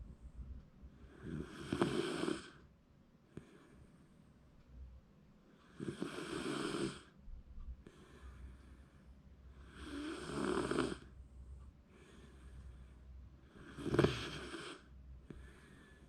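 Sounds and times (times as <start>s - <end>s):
dog snoring: 1.1s - 2.6s, 5.6s - 7.1s, 9.6s - 11.1s, 13.4s - 15.7s.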